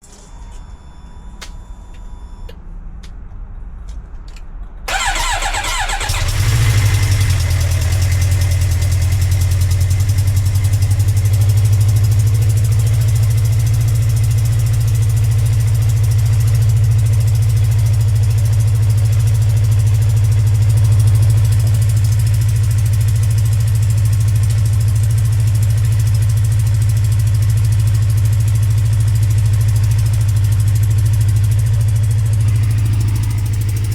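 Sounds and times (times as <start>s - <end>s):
starter motor cranking: 4.9s - 10.5s
exhaust leak ticking: 4.9s - 33.9s
motorcycle engine idling: 4.9s - 33.9s.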